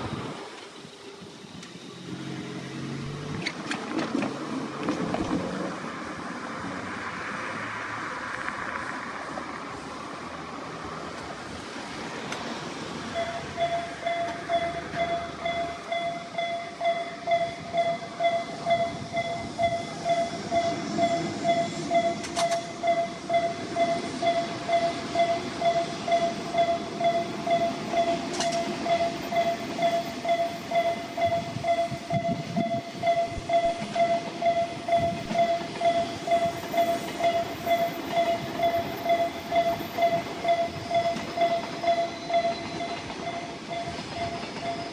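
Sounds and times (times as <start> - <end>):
train running rumble: 7.8 - 44.9
level crossing warning alarm: 13.1 - 44.9.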